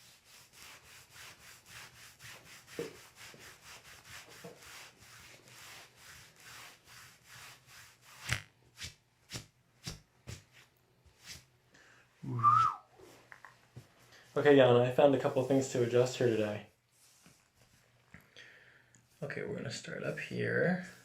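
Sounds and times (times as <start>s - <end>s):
hands rubbing skin in massage: 0.0s - 11.5s, 15.2s - 17.9s
sharp massage strokes: 0.0s - 11.5s.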